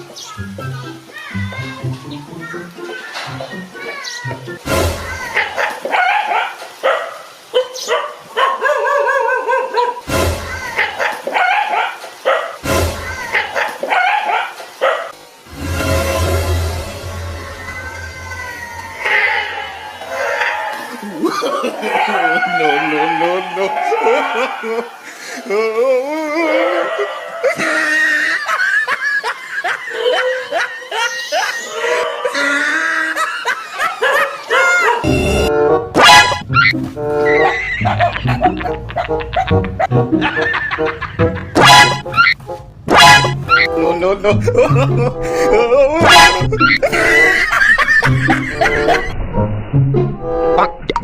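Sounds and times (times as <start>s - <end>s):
dog barking and yipping: 5.3s - 10.1s, 10.8s - 12.6s, 13.3s - 15.2s, 29.8s - 32.6s, 33.2s - 35.2s, 36.0s - 39.9s, 41.4s - 43.7s, 46.0s - 49.0s
quick pitched laughter: 36.6s - 42.4s, 44.5s - 49.2s.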